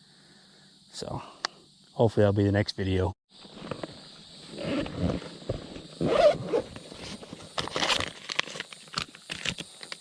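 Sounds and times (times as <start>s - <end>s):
insects chirping: 0.0s - 10.0s
zipper-like rasping strokes: 6.0s - 7.2s.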